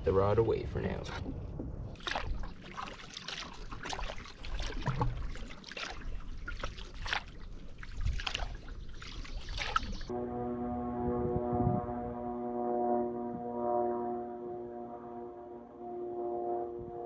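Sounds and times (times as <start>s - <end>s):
paddle splashing in water: 1.1s - 10.1s
water dripping: 2.0s - 10.1s.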